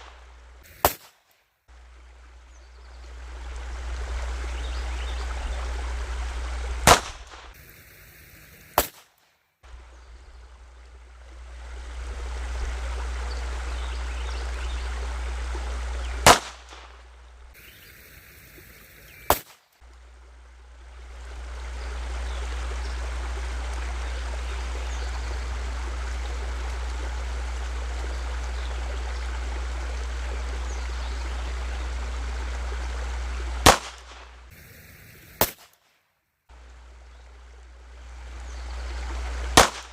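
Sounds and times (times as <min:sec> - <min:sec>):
pistol shots: 0:00.7 - 0:01.2, 0:06.9 - 0:07.8, 0:08.5 - 0:09.1, 0:16.2 - 0:16.9, 0:19.2 - 0:19.6, 0:33.6 - 0:34.2, 0:35.2 - 0:35.8, 0:39.6 - 0:39.9
wind rumble on microphone: 0:02.5 - 0:07.6.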